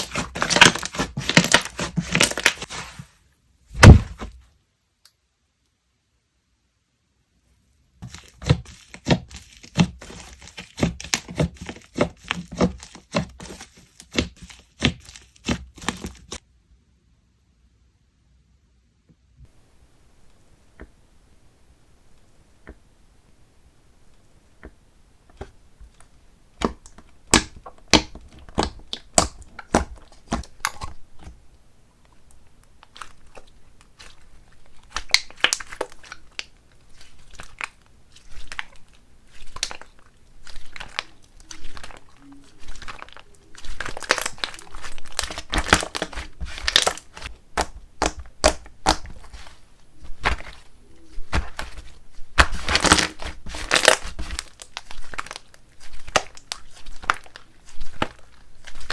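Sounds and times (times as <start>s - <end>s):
slime crackling and popping: 0.0s - 2.8s, 26.5s - 31.4s, 32.0s - 58.9s.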